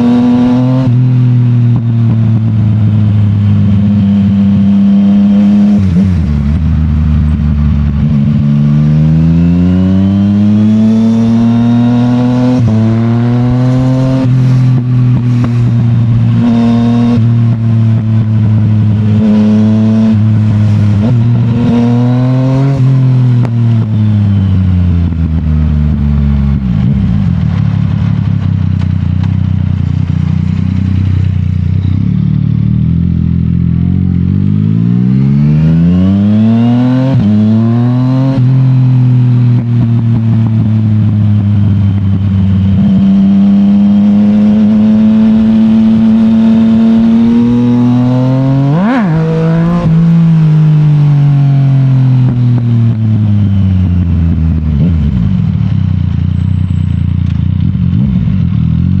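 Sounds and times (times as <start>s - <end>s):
motorcycle engine: 0.0s - 59.0s.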